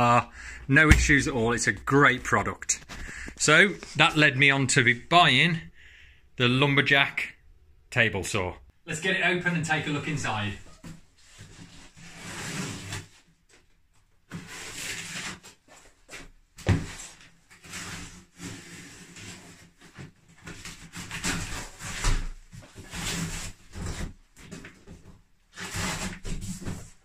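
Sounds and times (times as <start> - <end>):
sharp knock: 0.9 - 1.4.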